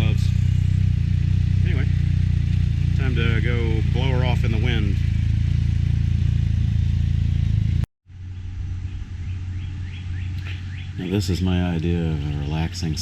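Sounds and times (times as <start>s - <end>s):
bird chirps: 0.0s - 1.0s, 8.2s - 13.0s
engine idling: 0.0s - 13.0s.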